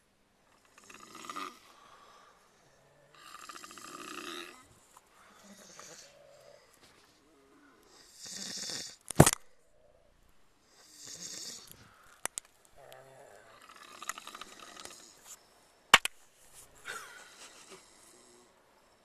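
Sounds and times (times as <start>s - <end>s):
people snoring: 0.6s - 9.0s, 10.6s - 12.1s, 12.8s - 15.5s, 16.8s - 19.0s
loud sharp clicks: 9.1s - 9.4s, 15.9s - 16.2s.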